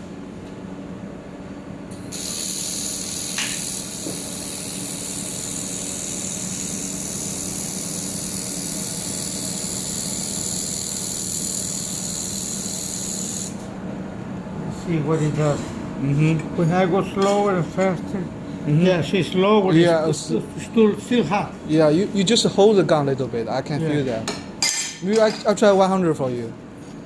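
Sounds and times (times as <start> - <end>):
steady low hum: 0.0 - 27.0
laser welder hissing: 2.1 - 13.7.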